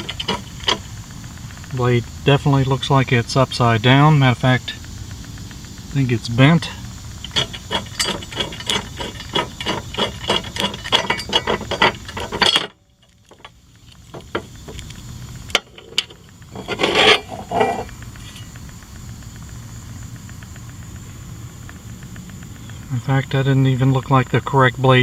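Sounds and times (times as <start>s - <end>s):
ratchet wrench clicking: 0.0s - 1.9s, 2.5s - 24.4s
metal blade scraping and clattering: 7.3s - 12.7s, 15.6s - 18.4s.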